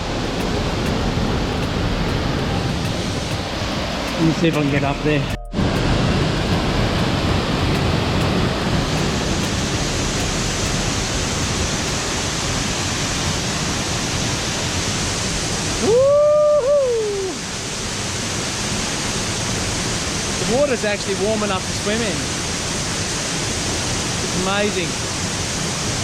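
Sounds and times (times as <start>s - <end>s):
waterfall roaring: 0.0s - 26.0s
person calling ooh: 15.8s - 17.4s.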